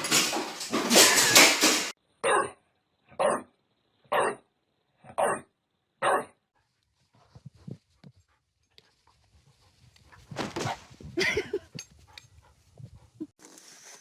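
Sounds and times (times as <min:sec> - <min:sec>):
dog barking: 0:02.2 - 0:02.6, 0:03.2 - 0:03.5, 0:04.1 - 0:04.4, 0:05.1 - 0:06.4
soft irregular noises: 0:06.6 - 0:14.0.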